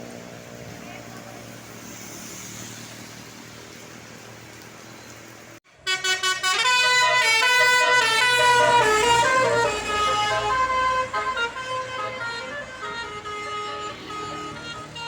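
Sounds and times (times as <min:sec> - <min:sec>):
traffic rumble: 0:00.0 - 0:15.0
multi-tone air horn tune: 0:05.8 - 0:15.0.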